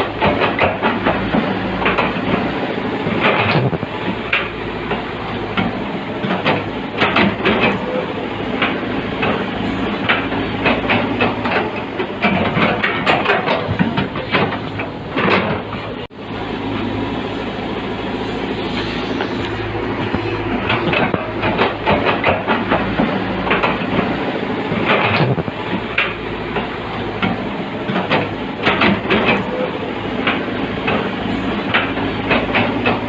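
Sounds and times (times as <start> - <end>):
heavy diesel machinery droning: 0.0 - 33.0
metallic clanks and rattles: 10.0 - 16.0, 20.0 - 24.1.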